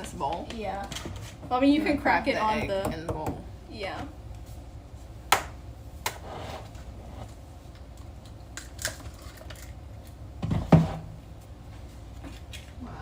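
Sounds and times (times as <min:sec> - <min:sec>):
egg cracking open: 0:07.9 - 0:10.2.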